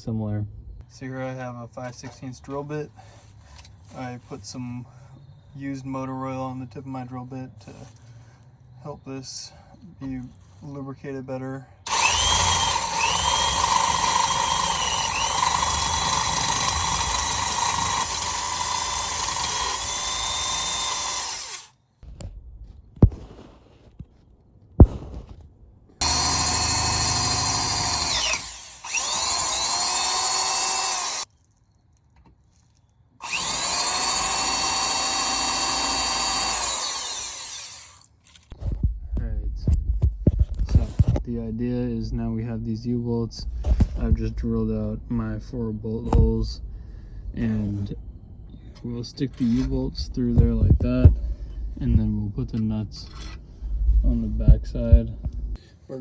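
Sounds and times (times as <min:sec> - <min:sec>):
electric drill boring metal: 0:11.9 - 0:21.8, 0:26.0 - 0:31.3, 0:33.2 - 0:38.1.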